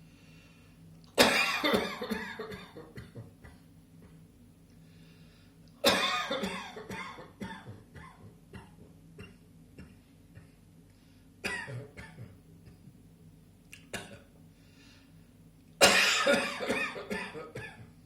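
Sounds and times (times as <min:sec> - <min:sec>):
faint low hum: 0:00.0 - 0:18.0
person coughing: 0:01.2 - 0:03.6, 0:05.8 - 0:10.6, 0:11.4 - 0:12.8, 0:15.8 - 0:17.9.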